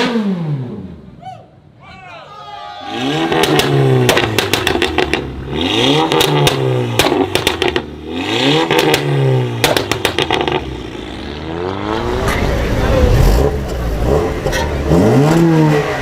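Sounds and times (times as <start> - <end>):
car engine revving: 2.9 - 16.0
exhaust crackles and pops: 3.4 - 5.4, 6.0 - 8.0, 8.7 - 10.9.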